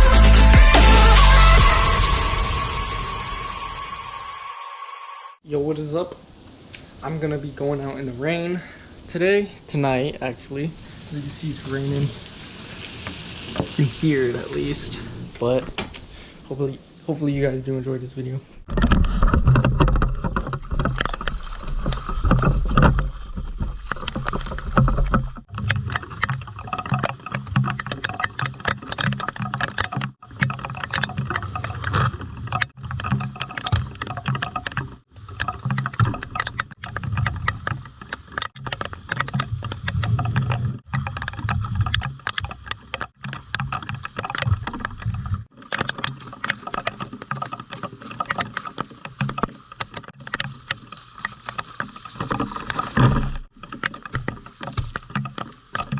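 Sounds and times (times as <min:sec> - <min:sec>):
rain patter: 0:05.4 - 0:32.0
low rumble: 0:13.7 - 0:17.0.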